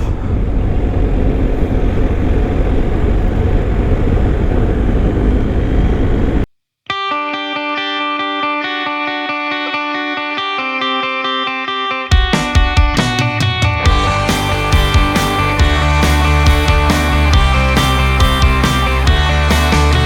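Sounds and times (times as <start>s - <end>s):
motorcycle engine drone: 0.0s - 6.5s, 13.9s - 20.0s
distorted electric guitar music: 6.9s - 20.0s.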